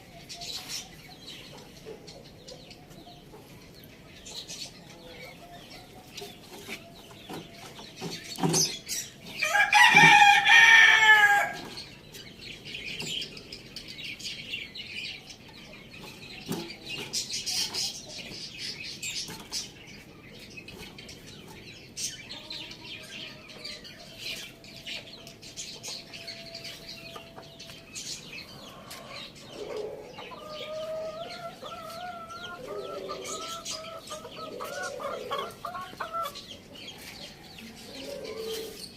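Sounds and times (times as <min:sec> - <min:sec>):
rooster crowing: 0:09.4 - 0:11.6
hens clucking: 0:15.4 - 0:38.9.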